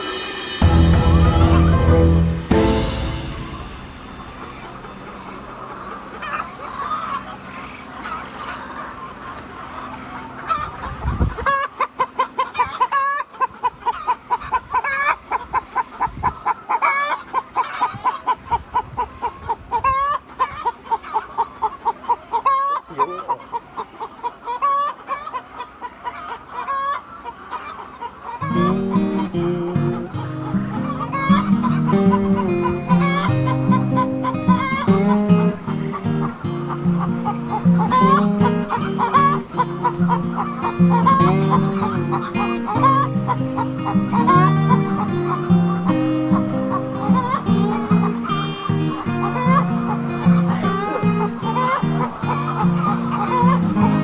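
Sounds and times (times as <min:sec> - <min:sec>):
chickens clucking: 0:28.4 - 0:45.8, 0:46.6 - 0:54.0.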